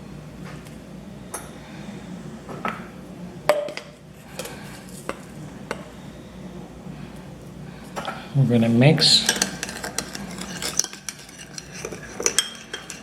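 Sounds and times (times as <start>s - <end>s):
steady low hum: 0.0s - 13.0s
spoon clinking against a bowl: 9.2s - 13.0s.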